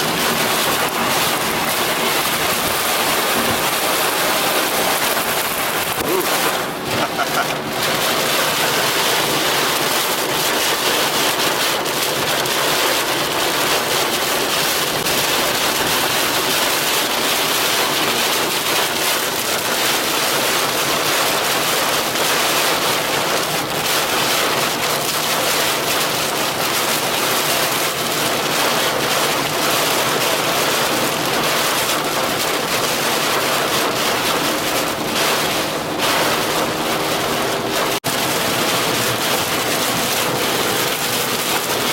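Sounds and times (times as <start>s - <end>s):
heavy rain on a moving car: 0.0s - 41.9s
road spray under tyres: 0.0s - 41.9s.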